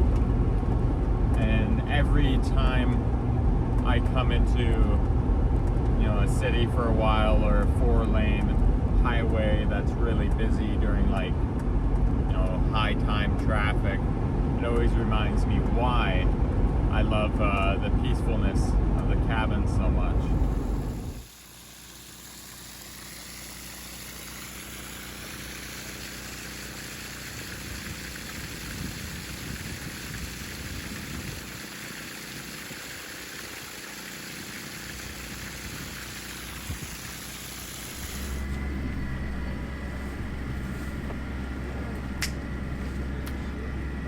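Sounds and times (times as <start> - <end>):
low engine hum: 0.0 - 44.0.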